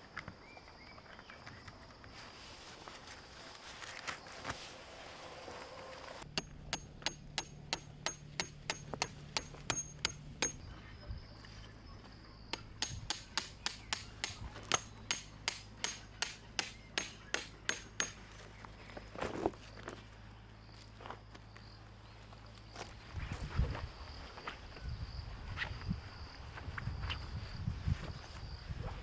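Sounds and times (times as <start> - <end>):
hammer striking tent pegs: 6.3 - 10.6, 12.6 - 18.2.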